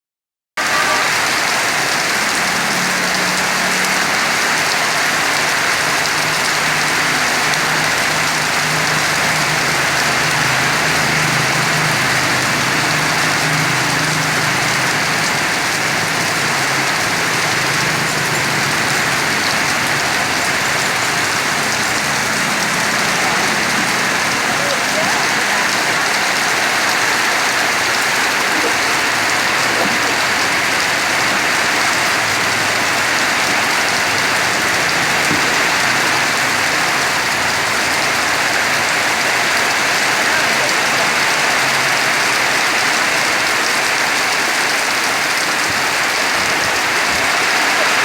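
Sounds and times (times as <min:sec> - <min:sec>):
rain pattering: 0:00.6 - 0:48.0.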